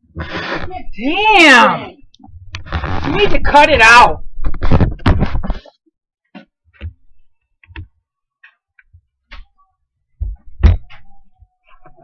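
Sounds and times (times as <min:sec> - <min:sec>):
knocks and thumps: 0:04.4 - 0:05.7, 0:10.2 - 0:11.2.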